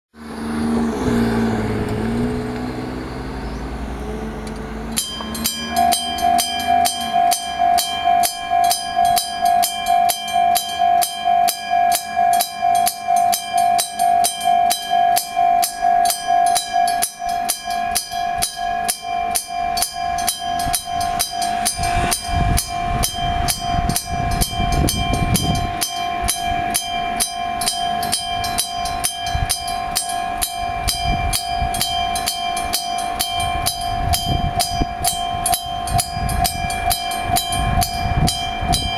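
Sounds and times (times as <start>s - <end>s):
vehicle engine passing: 0.2s - 7.9s, 19.8s - 26.7s
low rumble of approaching train: 0.2s - 38.9s
level-crossing warning bell: 4.8s - 38.9s.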